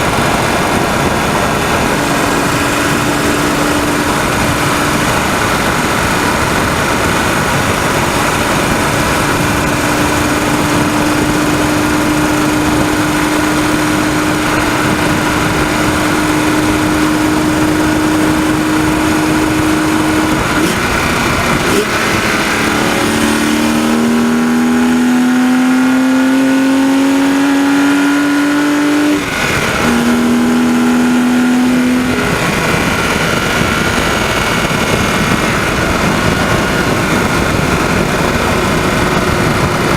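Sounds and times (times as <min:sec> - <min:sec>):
engine rattling ticking: 0:00.0 - 0:23.4, 0:32.0 - 0:39.9
car engine revving: 0:00.0 - 0:39.9
road and wind noise: 0:00.0 - 0:39.9.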